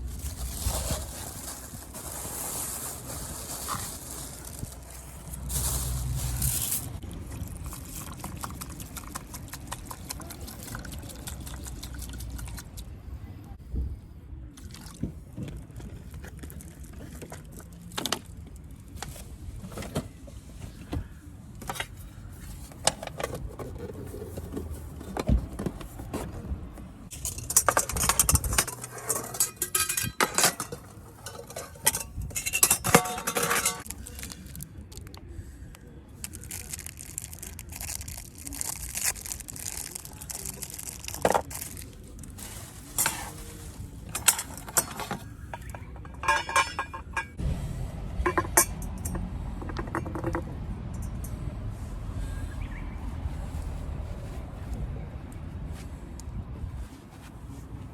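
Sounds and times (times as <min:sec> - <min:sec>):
utensils clattering and scraping: 0:27.1 - 0:34.4, 0:40.7 - 0:47.4
metal and glass cookware clinking: 0:27.2 - 0:33.9, 0:45.8 - 0:47.4.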